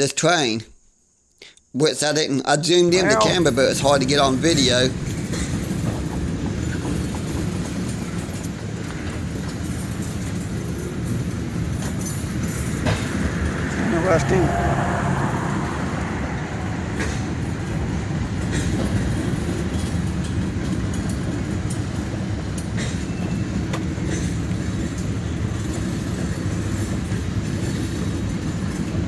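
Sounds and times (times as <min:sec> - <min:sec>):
freight train rumbling past: 0:03.0 - 0:29.0
wheels and couplers clanking: 0:03.1 - 0:29.0.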